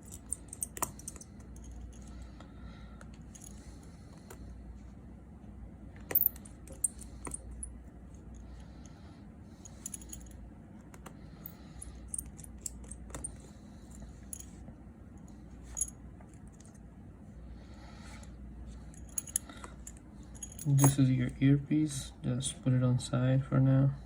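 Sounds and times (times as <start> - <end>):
metal tools clicking and tapping: 19.0 - 21.1.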